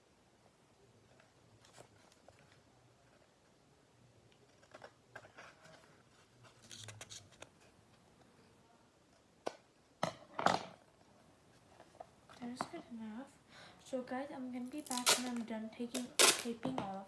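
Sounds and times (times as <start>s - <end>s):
paper and tape crinkling: 14.6s - 17.0s.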